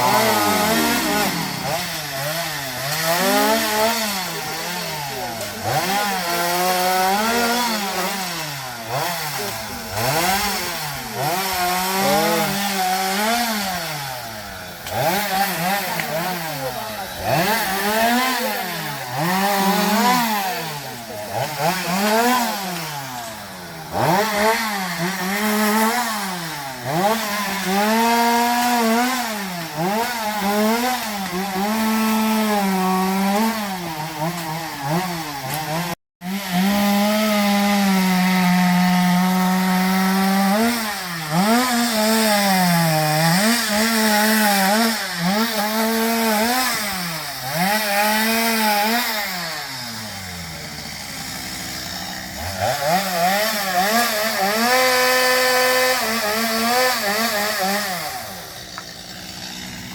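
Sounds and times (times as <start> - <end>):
chainsaw cutting wood: 0.0 - 59.9.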